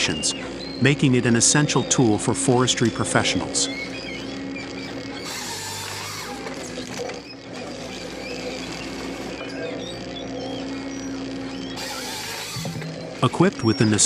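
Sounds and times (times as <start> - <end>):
harvester engine drone: 0.0 - 14.0
mechanical rattling and clicking: 3.7 - 14.0.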